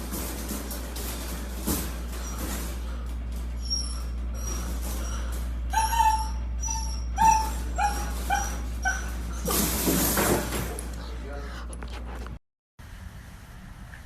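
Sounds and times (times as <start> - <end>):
dog whimpering yips: 3.6 - 9.8.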